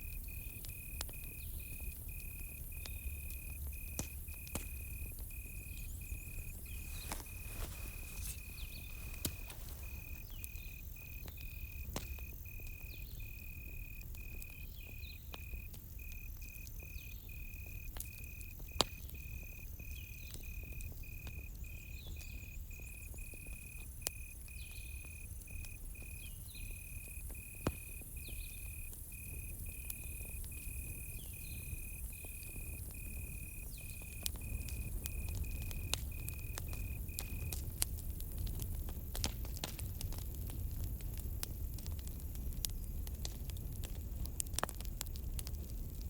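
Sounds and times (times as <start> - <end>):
cricket chirping: 0.0 - 44.4
campfire crackling: 0.0 - 46.0
sharp pops from fire: 0.0 - 46.0.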